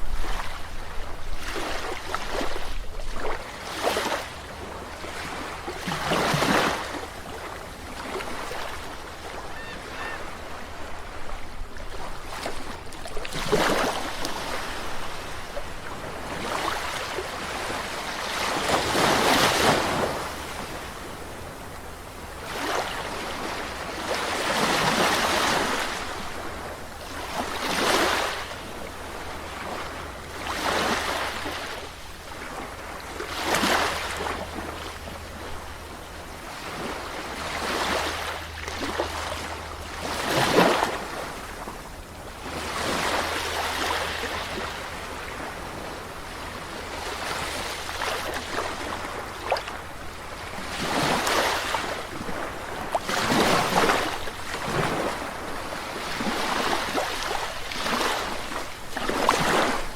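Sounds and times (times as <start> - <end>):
low rumble of surf: 0.0 - 59.9
small waves breaking on beach: 0.0 - 59.9.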